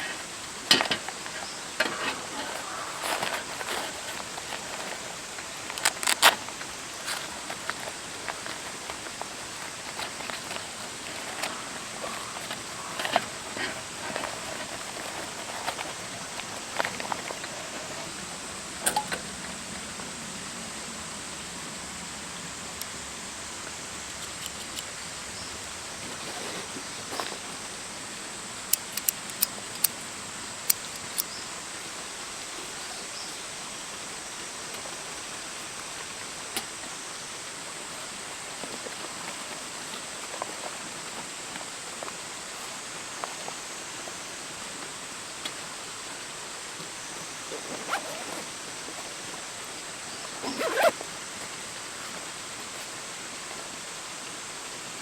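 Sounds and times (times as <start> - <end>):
outdoor hiss: 0.0 - 55.0
sharp clicks and pops: 28.7 - 30.0.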